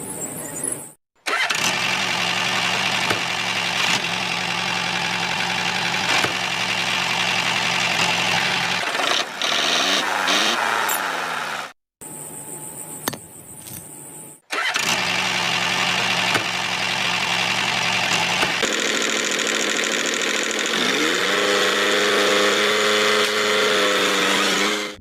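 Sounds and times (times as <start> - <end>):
small engine running: 1.2 - 11.8, 14.5 - 25.0.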